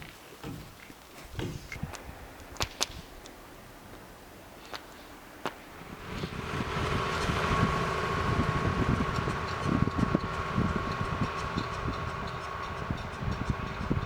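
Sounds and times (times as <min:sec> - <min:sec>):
machine humming: 0:05.7 - 0:14.0
machine rattling and knocking: 0:05.8 - 0:14.0.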